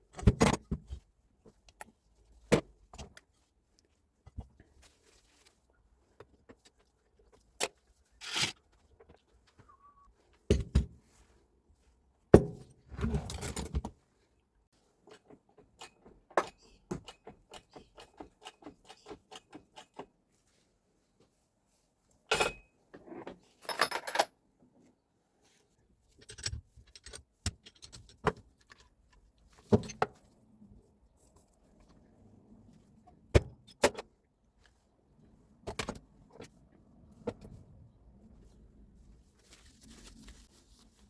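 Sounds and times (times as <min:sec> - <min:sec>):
metal tools clinking and knocking: 0:22.3 - 0:22.7, 0:23.6 - 0:24.3.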